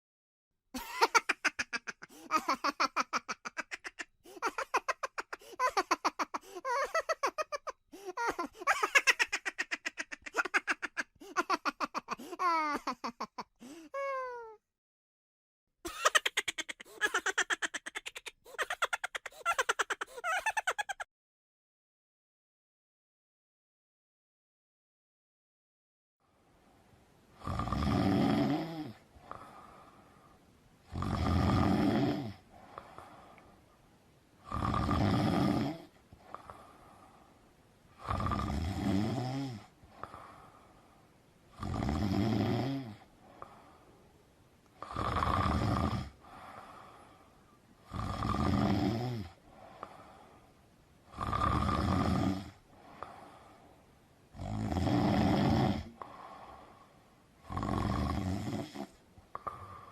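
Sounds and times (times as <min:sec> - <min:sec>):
rasping snores: 0:27.4 - 0:29.6, 0:30.9 - 0:32.4, 0:34.4 - 0:36.6, 0:38.0 - 0:40.2, 0:41.6 - 0:43.6, 0:44.8 - 0:46.8, 0:47.9 - 0:50.0, 0:51.1 - 0:53.2, 0:54.4 - 0:56.6, 0:57.4 - 0:59.9.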